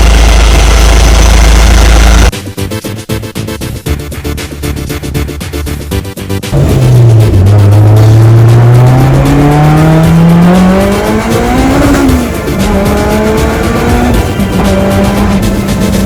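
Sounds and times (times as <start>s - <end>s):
car engine accelerating: 0.0s - 2.3s, 6.5s - 16.0s
music: 2.3s - 16.0s.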